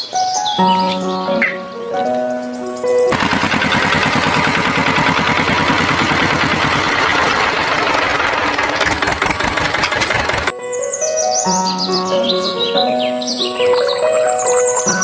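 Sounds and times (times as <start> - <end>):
motor running with rapid pulse: 3.1 - 10.5.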